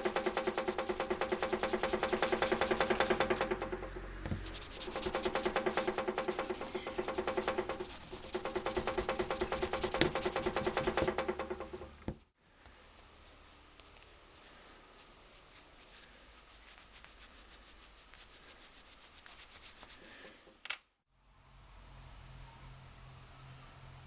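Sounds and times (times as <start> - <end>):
rhythmic rubbing strokes: 0.0 - 12.0.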